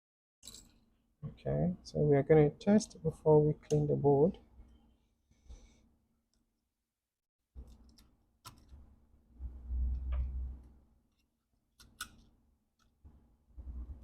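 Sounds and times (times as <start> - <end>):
clicks of laptop parts handled: 7.6 - 8.8.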